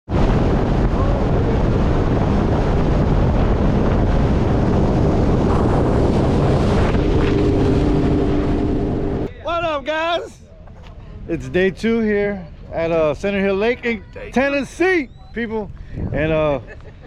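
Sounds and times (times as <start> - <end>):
jet ski running: 0.1 - 9.3
wind rushing over microphone: 0.1 - 9.4, 11.2 - 17.0.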